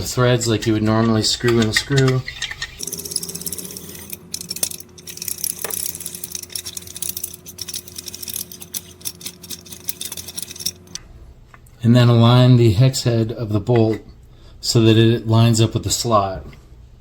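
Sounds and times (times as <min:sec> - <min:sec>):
bolt clicking and scraping in threads: 0:00.6 - 0:11.0.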